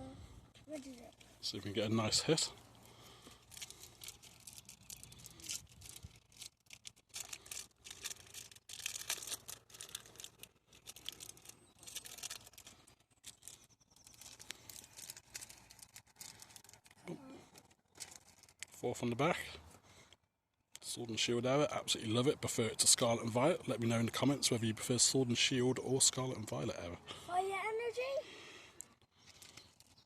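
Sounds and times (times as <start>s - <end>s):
foil pack tearing and crinkling: 2.8s - 18.8s.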